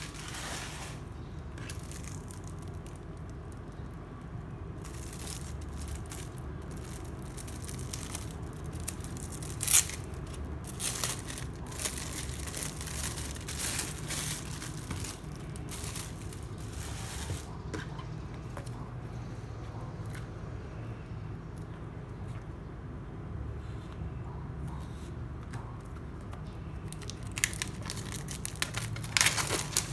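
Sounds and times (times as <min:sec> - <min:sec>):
packaging crinkling and tearing: 0:00.0 - 0:17.5, 0:26.8 - 0:29.9.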